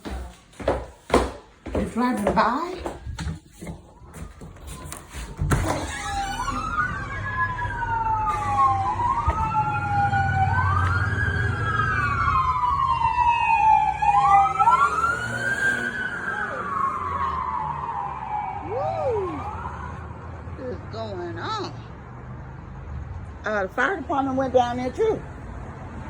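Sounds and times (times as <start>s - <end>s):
emergency sirens wailing: 3.8s - 20.6s.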